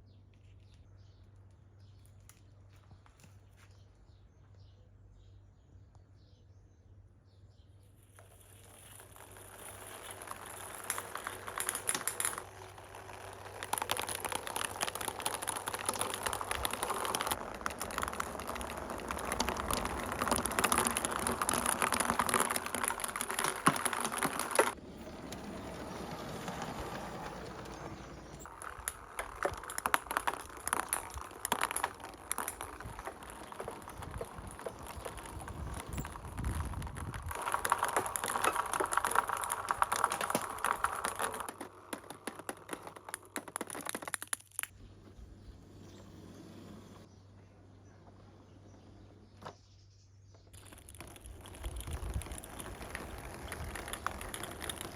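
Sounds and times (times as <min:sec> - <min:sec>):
marbles clattering down a marble run: 0:08.2 - 0:44.8, 0:50.6 - 0:54.9.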